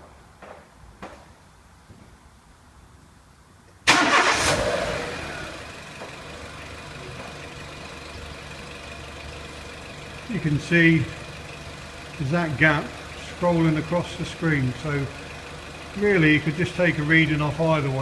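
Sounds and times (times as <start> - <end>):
car engine starting and idling: 3.8 - 18.0.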